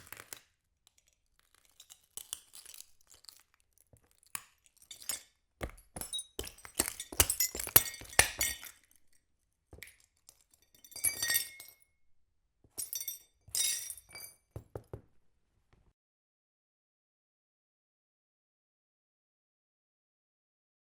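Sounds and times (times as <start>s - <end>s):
glass shards crunching: 0.0s - 0.4s, 1.0s - 9.0s, 12.8s - 14.3s.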